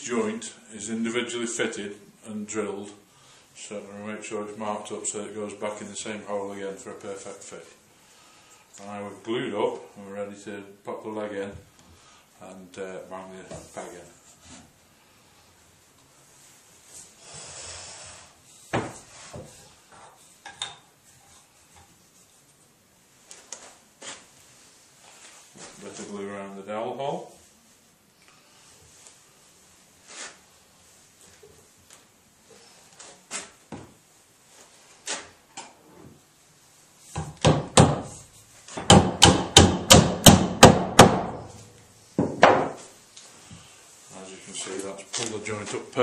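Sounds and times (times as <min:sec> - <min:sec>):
sharp wooden knock: 0:38.8 - 0:41.4.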